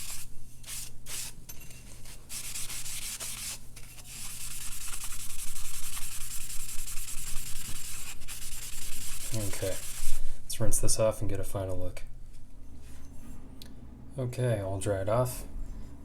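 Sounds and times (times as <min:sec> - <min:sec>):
sponge scrubbing sharpening stone: 0:02.4 - 0:10.0.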